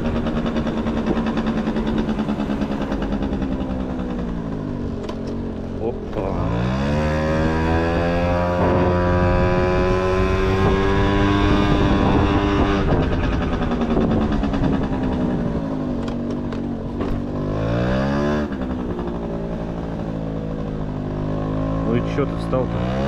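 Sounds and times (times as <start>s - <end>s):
moped engine running: 0.0s - 23.0s.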